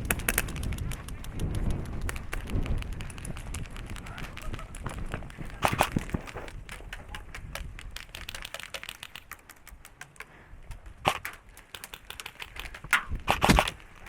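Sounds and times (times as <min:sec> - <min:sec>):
sharp crack: 0:00.0 - 0:14.0
airsoft gunfire: 0:05.5 - 0:06.3, 0:11.0 - 0:13.8.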